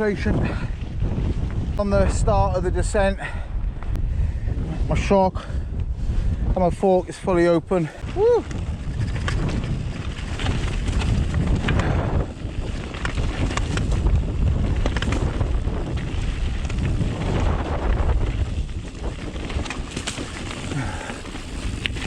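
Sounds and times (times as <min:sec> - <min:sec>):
gusty wind buffeting microphone: 0:00.0 - 0:22.0
mountain bike clattering on rocks: 0:08.5 - 0:22.0.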